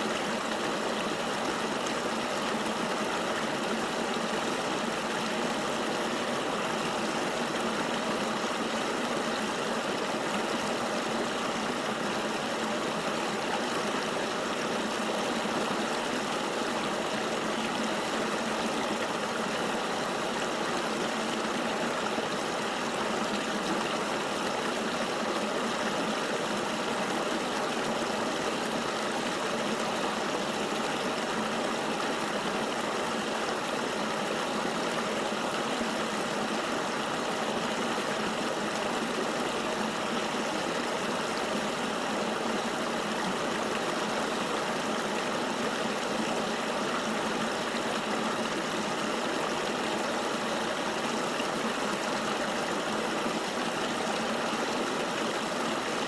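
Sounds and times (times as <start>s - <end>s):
river flowing: 0.0s - 56.0s.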